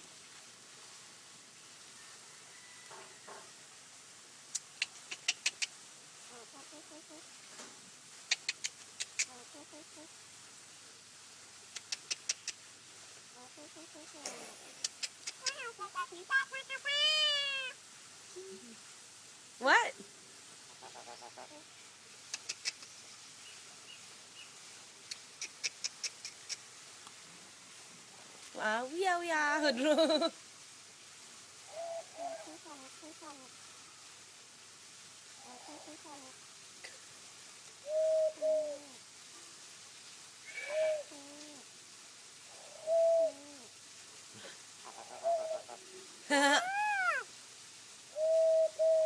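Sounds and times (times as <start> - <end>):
starling hooting whistled calls: 40.5 - 41.2, 42.5 - 43.6.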